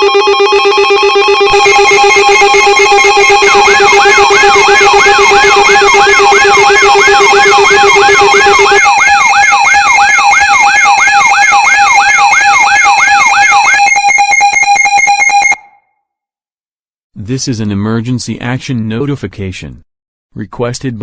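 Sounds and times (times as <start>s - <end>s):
fast pulsing alarm: 0.0s - 15.8s
siren-like alarm sweep: 0.0s - 15.8s
steady alarm tones: 0.0s - 15.8s.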